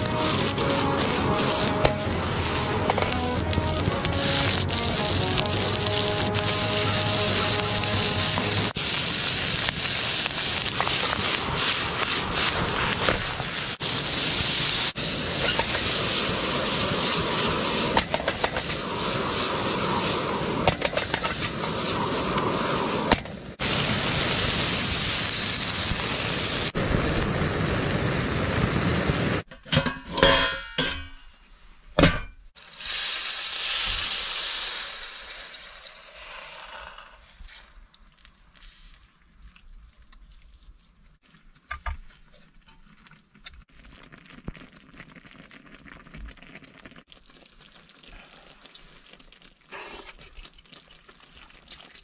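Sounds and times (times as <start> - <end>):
meat sizzling in a pan: 0.0 - 29.4, 32.6 - 36.2.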